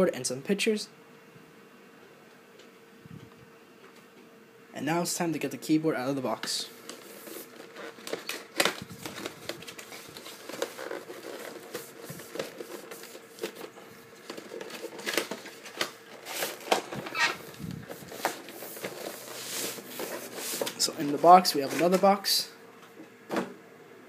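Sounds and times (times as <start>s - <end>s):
cardboard packaging being handled: 6.7s - 22.3s
cardboard rubbing squeaks: 7.0s - 13.3s, 14.7s - 21.9s.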